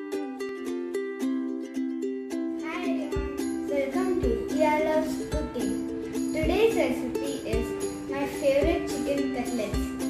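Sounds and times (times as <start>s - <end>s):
plucked-string background music: 0.0s - 10.0s
person speaking: 2.6s - 10.0s.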